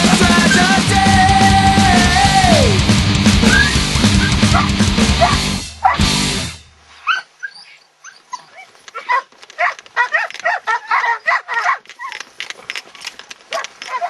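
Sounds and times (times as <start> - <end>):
dogs yipping and whining: 3.4 - 6.1, 7.0 - 14.0.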